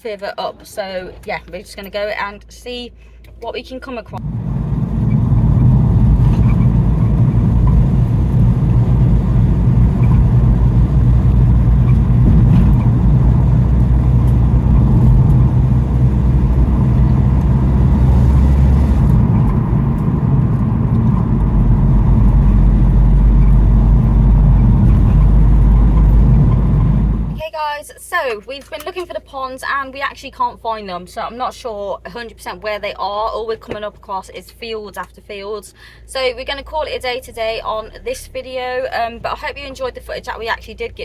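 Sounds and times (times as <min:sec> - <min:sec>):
engine and road noise drone: 0:00.0 - 0:27.4, 0:35.8 - 0:41.0.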